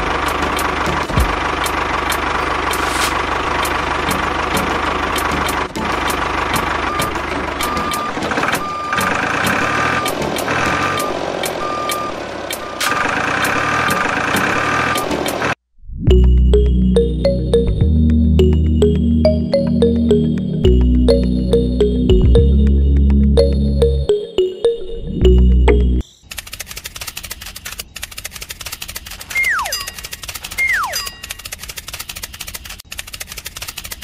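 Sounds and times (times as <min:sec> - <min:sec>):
miniature tractor motor running: 0:00.0 - 0:08.1
short electronic beeps: 0:06.8 - 0:13.0
regular clicking: 0:25.4 - 0:34.0.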